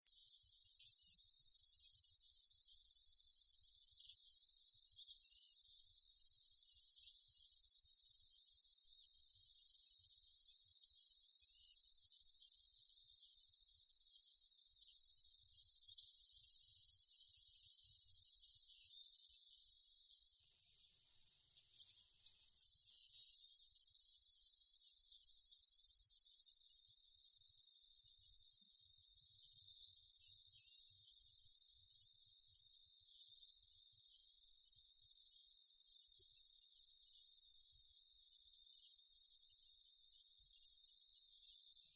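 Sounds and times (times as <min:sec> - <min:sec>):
cicada buzzing: 0:18.8 - 0:20.4, 0:21.7 - 0:25.8.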